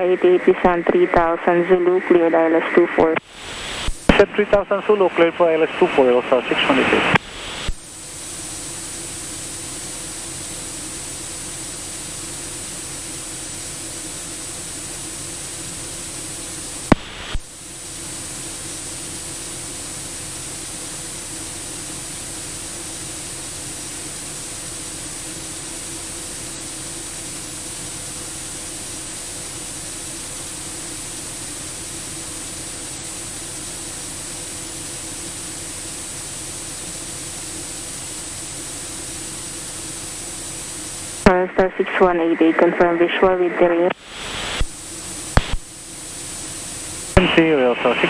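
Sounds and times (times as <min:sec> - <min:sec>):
radio static hiss: 0:00.0 - 0:48.0.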